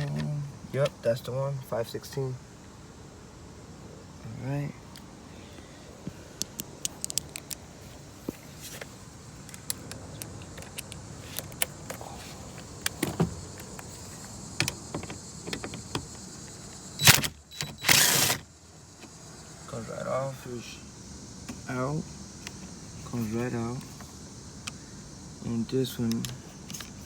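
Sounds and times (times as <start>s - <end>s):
socket wrench clicking: 6.4s - 7.6s, 9.4s - 12.0s
door part rattling: 12.8s - 13.9s, 14.5s - 16.2s.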